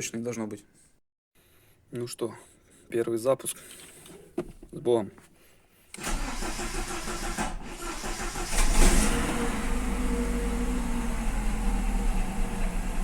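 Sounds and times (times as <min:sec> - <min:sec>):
starter cranking engine: 0:06.0 - 0:10.0
car engine idling: 0:06.0 - 0:13.0.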